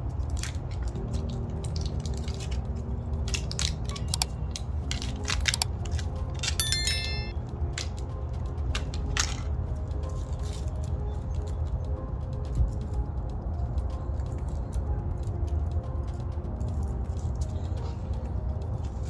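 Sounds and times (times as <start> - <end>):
short metallic ring: 6.6 - 7.3.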